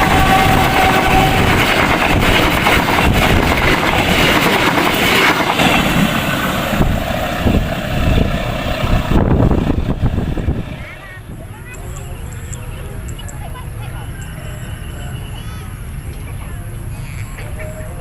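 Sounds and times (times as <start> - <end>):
train horn: 0.0 - 2.5, 5.4 - 6.4
wheels clacking: 0.0 - 16.4
train wheels rumbling on rails: 0.0 - 18.0.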